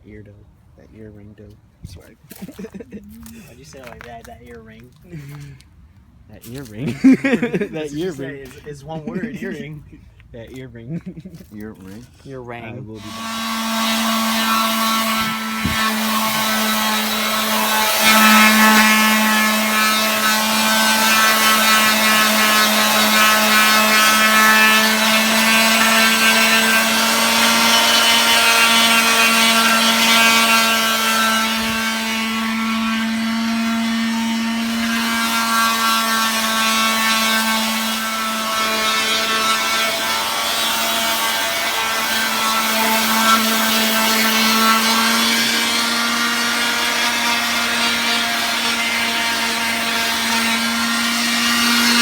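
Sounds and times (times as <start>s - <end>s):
electric sander sanding: 12.8s - 52.0s.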